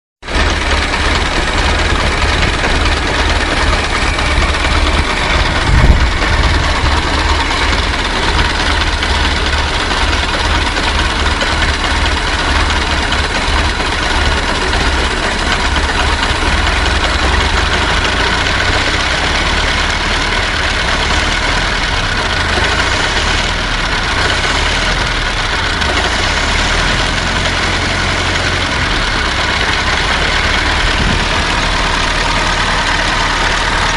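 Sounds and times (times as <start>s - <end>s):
car engine idling: 0.2s - 33.9s.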